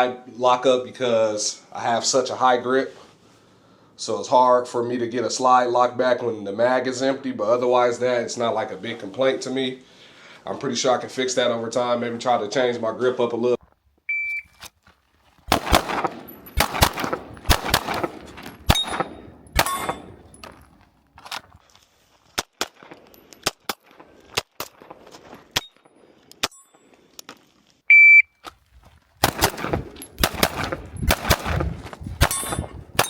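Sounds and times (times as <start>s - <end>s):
shot timer beep: 14.1s - 14.5s, 27.9s - 28.3s
pistol shots: 15.5s - 20.5s, 29.2s - 33.0s.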